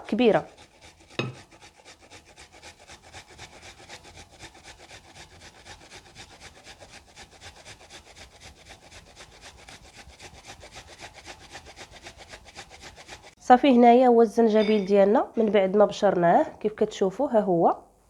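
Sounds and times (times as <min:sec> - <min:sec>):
ginger rasping on a grater: 0:00.0 - 0:13.4.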